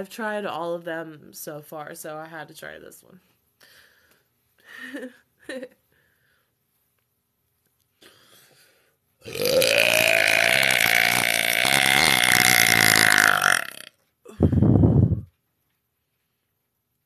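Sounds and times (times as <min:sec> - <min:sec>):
woman belching: 0:09.2 - 0:13.9.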